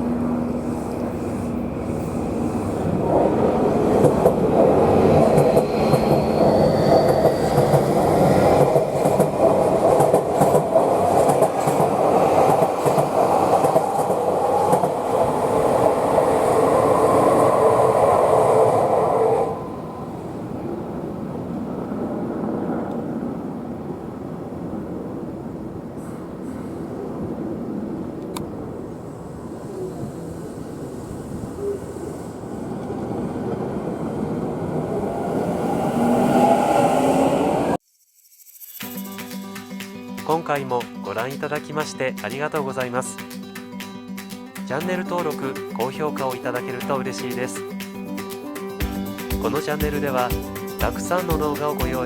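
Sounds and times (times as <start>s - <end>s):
wheel and rail running noise: 0.0s - 37.8s.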